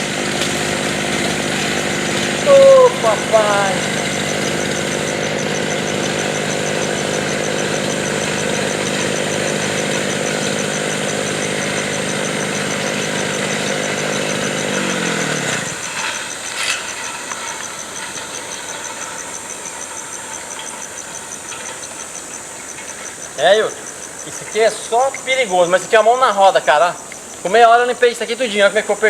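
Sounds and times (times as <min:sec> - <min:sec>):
brush cutter engine running: 0:00.0 - 0:27.4.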